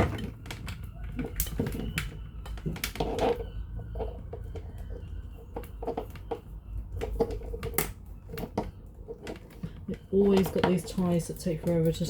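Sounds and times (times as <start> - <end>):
plastic parts clicking and knocking: 0.0 - 12.0.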